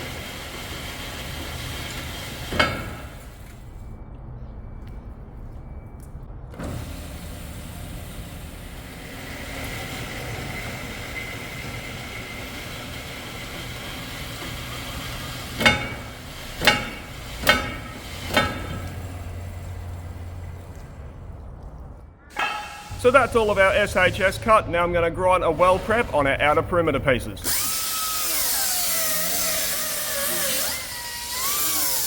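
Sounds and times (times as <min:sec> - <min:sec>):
metal-cutting saw cutting steel: 0:08.9 - 0:19.5, 0:22.3 - 0:32.0
ringing metal clanks: 0:15.5 - 0:19.5, 0:22.3 - 0:23.8.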